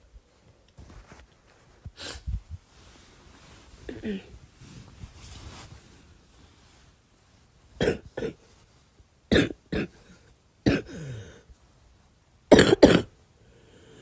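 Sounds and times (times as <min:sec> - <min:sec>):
girl coughing: 0:03.9 - 0:04.3, 0:07.8 - 0:08.4, 0:09.3 - 0:10.0, 0:10.7 - 0:11.1, 0:12.5 - 0:13.1.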